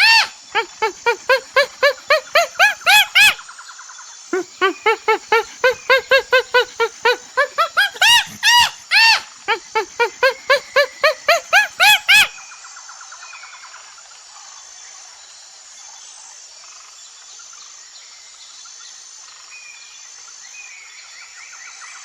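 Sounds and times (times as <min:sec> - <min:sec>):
animal calling rapidly: 0:00.0 - 0:03.4, 0:04.4 - 0:12.3
longer higher animal calls: 0:00.0 - 0:03.4, 0:04.4 - 0:12.3.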